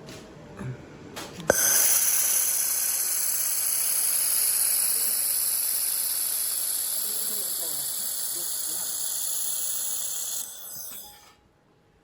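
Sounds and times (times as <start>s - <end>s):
loud hiss of laser welding: 1.5s - 11.0s.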